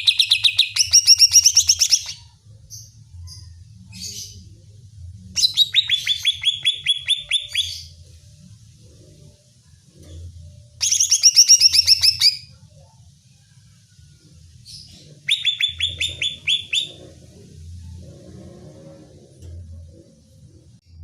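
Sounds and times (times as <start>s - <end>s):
bird singing rapid sharp notes: 0.0s - 2.3s, 5.4s - 8.0s, 10.8s - 12.5s, 15.0s - 17.2s.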